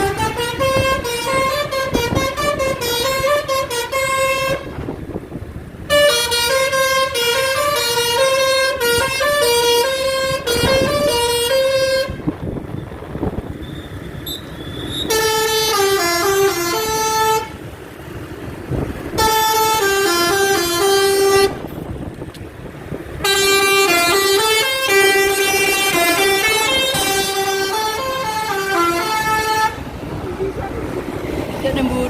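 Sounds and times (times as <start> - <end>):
multi-tone air horn tune: 0.0 - 4.8, 5.9 - 12.2, 14.2 - 17.6, 19.2 - 21.7, 23.2 - 29.8.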